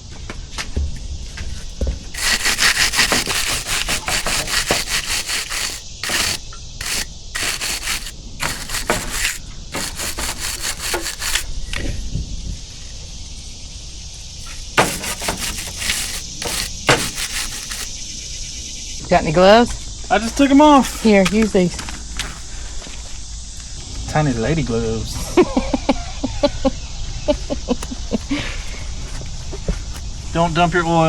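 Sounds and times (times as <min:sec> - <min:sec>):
fast rubbing strokes: 0:01.5 - 0:11.4, 0:14.8 - 0:17.9, 0:20.7 - 0:21.3.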